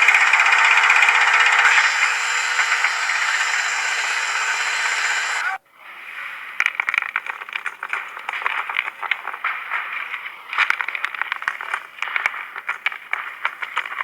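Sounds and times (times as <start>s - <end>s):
loud machine hiss: 0.0s - 5.6s
rattling and scraping clicks: 0.0s - 5.6s.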